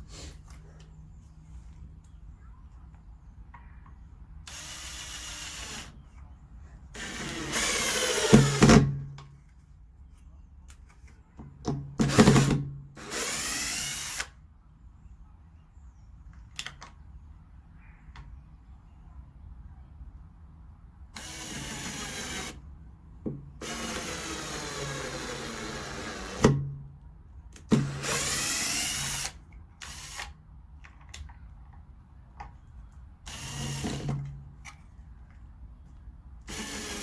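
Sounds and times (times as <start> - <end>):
power drill running: 4.5 - 6.0, 7.0 - 8.8, 12.0 - 14.3, 21.2 - 22.6, 23.6 - 26.6, 27.8 - 30.3, 33.3 - 34.2, 36.5 - 37.0
small clicks and knocks: 30.8 - 33.0.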